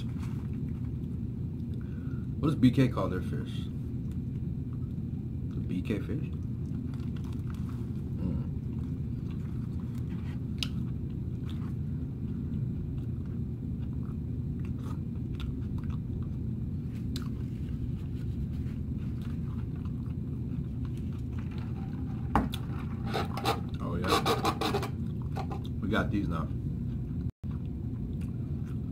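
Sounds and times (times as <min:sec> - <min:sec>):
low background rumble: 0:00.0 - 0:24.0
person chewing crispy food: 0:06.3 - 0:22.7, 0:26.8 - 0:28.9.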